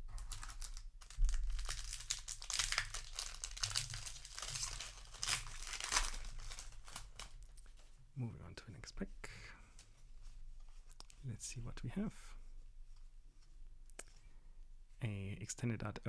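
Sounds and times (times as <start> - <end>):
foil wrapper crinkling and tearing: 0.0 - 7.8.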